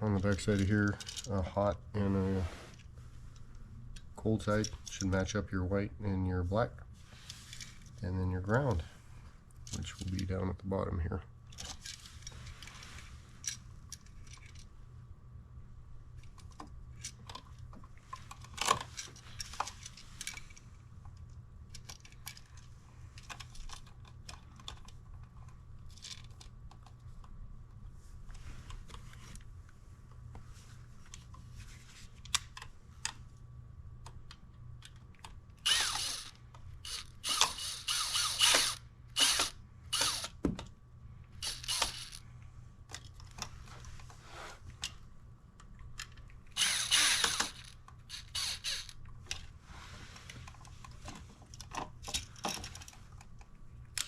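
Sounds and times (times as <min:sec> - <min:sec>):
hand tools clicking: 0:36.9 - 0:40.3, 0:41.4 - 0:42.2.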